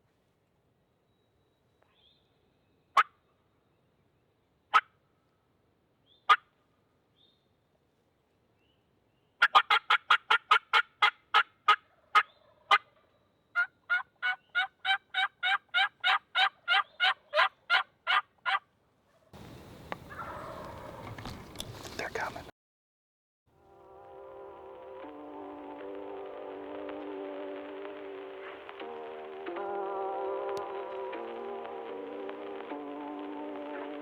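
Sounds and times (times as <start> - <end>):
turkey yelping: 3.0 - 3.2, 9.4 - 13.0, 13.6 - 18.6, 20.1 - 21.2.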